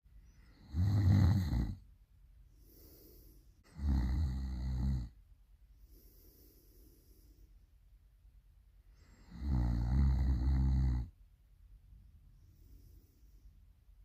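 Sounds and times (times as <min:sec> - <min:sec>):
person snoring loudly: 0:00.5 - 0:01.8, 0:03.7 - 0:05.2, 0:09.2 - 0:11.1
soft breath out: 0:02.5 - 0:03.7, 0:05.7 - 0:07.7, 0:12.3 - 0:13.7.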